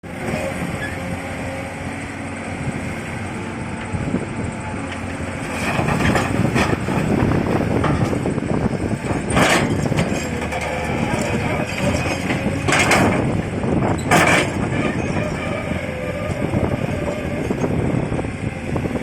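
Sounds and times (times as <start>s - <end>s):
excavator diesel engine running: 0.0s - 19.0s
clattering and knocking: 11.7s - 13.2s, 14.1s - 14.7s.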